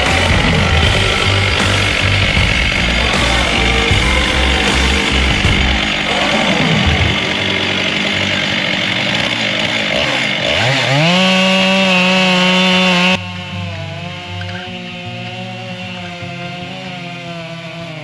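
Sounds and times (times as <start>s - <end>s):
chainsaw cutting under load: 0.0s - 13.2s.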